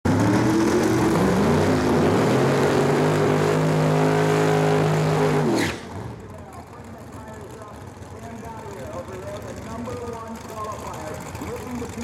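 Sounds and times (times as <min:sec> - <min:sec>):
racing car engine revving: 0:00.1 - 0:06.2.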